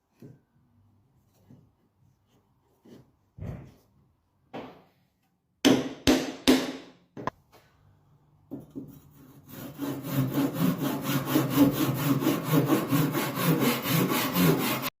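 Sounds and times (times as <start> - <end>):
hammering on wood: 5.6 - 7.3.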